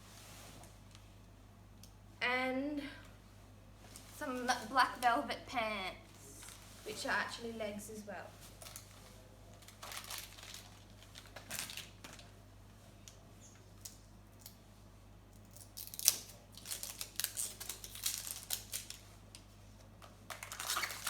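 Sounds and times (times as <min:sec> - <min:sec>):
plastic packaging rustling: 0:06.1 - 0:07.4, 0:08.4 - 0:12.4, 0:15.5 - 0:21.0
packaging crinkling: 0:08.4 - 0:12.4, 0:15.4 - 0:21.0.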